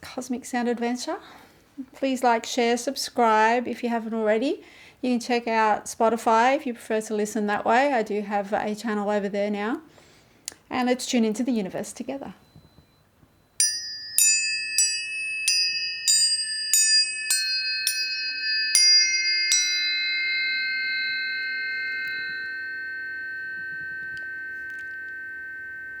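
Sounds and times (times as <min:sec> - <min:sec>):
clear steady ringing tones: 0:12.3 - 0:26.0
tuning forks struck: 0:13.6 - 0:26.0.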